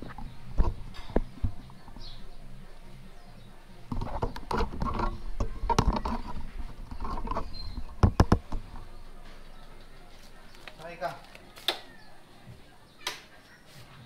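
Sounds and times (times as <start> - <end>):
handling and shuffling noises: 3.9 - 11.7.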